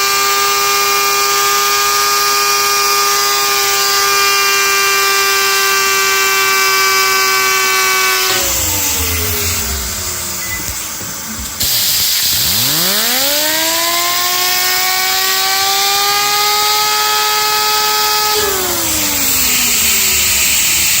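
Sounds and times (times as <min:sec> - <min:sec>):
fidget spinner whining: 0:06.0 - 0:21.0
compressed air hissing: 0:07.4 - 0:15.5, 0:17.8 - 0:21.0.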